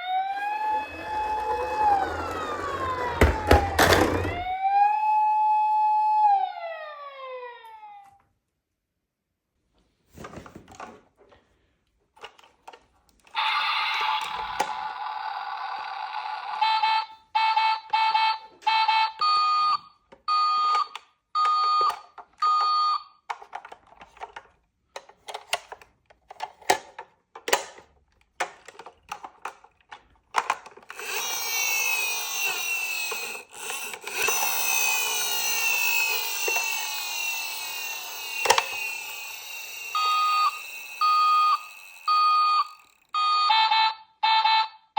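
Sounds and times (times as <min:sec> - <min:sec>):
warbling toy siren: 0:00.0 - 0:08.2, 0:13.3 - 0:22.0, 0:30.9 - 0:44.8
plastic toys clicking: 0:20.7 - 0:43.2.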